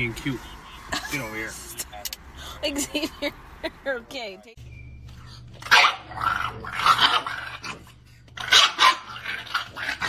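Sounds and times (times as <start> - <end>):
dog barking loudly: 5.6 - 7.8, 8.4 - 10.0.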